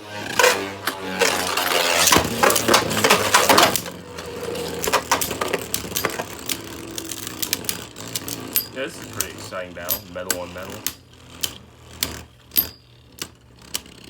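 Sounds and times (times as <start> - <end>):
spinning top whirring: 0.0 - 14.0
spinning tops clashing: 0.4 - 11.0.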